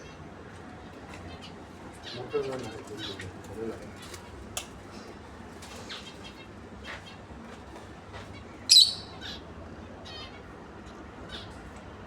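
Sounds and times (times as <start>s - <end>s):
lovebirds chirping: 8.7s - 9.2s.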